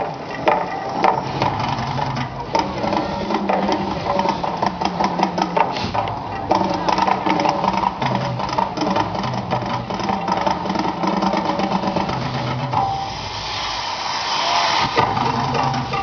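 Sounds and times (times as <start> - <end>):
loud hissing rush: 10.8 - 16.0.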